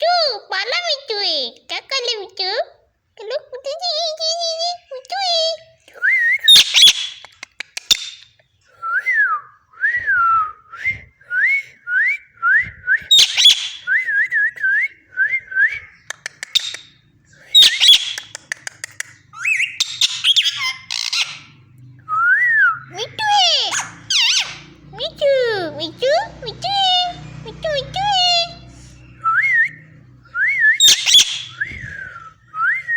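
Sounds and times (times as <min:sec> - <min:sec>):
parrot whistling: 0:06.0 - 0:07.3, 0:08.8 - 0:25.0, 0:28.0 - 0:32.9
parrot squawking harshly: 0:06.5 - 0:07.2, 0:13.1 - 0:13.9, 0:17.5 - 0:18.3, 0:19.5 - 0:21.6, 0:23.0 - 0:24.8, 0:30.8 - 0:31.6.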